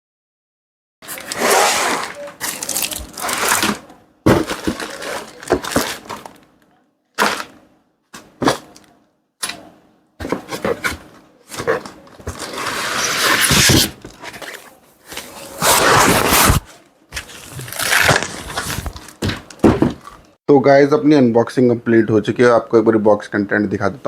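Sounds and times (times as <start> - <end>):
cardboard scraping and rustling: 1.0 - 6.4, 10.2 - 20.2.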